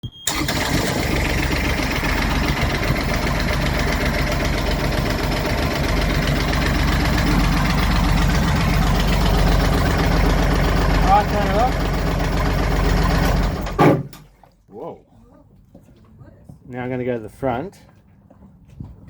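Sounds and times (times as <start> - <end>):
marine diesel engine knocking: 0.4 - 14.0.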